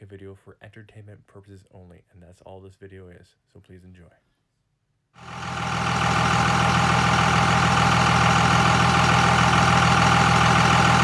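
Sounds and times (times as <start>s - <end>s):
engine idling: 5.2s - 11.0s.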